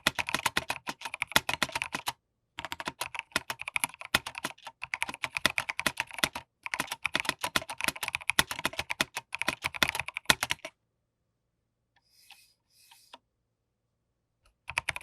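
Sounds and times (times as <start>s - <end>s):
mechanical keyboard typing: 0.0s - 10.7s, 14.6s - 15.0s.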